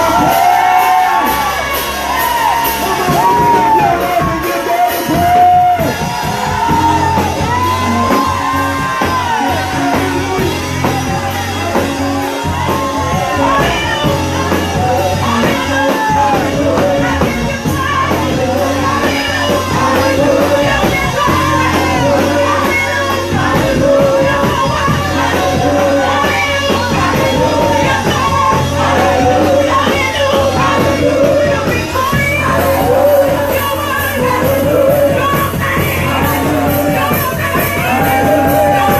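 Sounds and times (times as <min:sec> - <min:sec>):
people shouting: 0:00.0 - 0:31.5, 0:32.2 - 0:38.9
gospel music with singers and band: 0:00.0 - 0:38.9.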